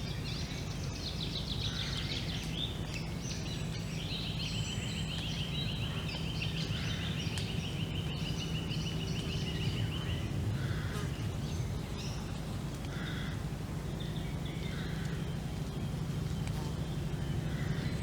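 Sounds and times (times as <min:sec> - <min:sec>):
songbirds chirping and calling: 0:00.0 - 0:18.0
steady low rumble: 0:00.0 - 0:18.0.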